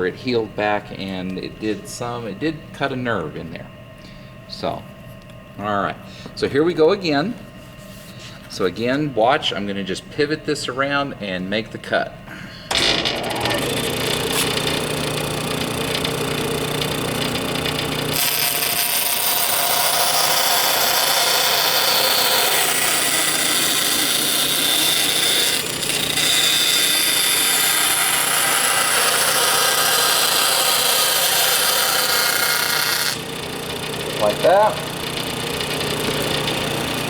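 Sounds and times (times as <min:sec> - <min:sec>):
power saw motor hum: 0:12.7 - 0:37.0
saw blade cutting acrylic: 0:12.7 - 0:37.0.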